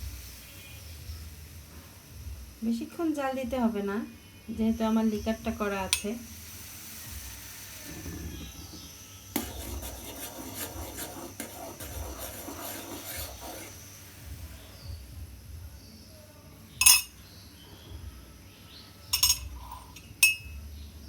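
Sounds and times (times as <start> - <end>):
utensils scraping a pan: 9.4 - 13.8
sharp ringing clink: 16.8 - 17.2, 19.2 - 20.6.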